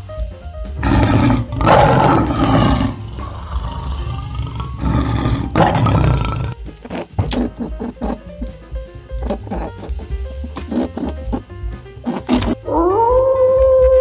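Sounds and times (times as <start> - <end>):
large animal roaring: 0.8 - 7.5, 12.1 - 14.0.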